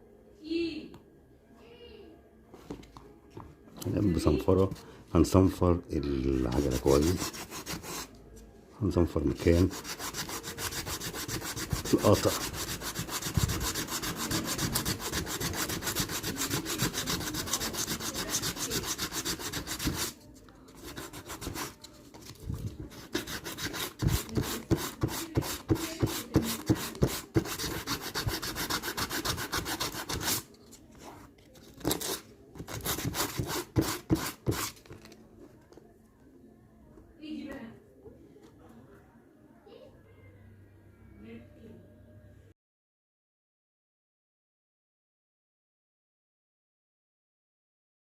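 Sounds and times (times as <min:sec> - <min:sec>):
sandpaper scrubbing rubber: 0:06.5 - 0:08.1, 0:09.5 - 0:20.2, 0:20.8 - 0:21.8, 0:22.9 - 0:30.4, 0:32.0 - 0:34.7.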